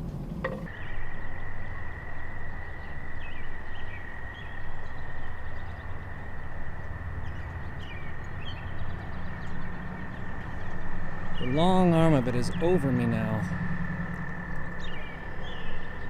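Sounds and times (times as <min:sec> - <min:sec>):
low rumble of wind: 0:00.0 - 0:16.0
bird chirps: 0:00.5 - 0:16.0
high-pitched drone: 0:07.1 - 0:16.0.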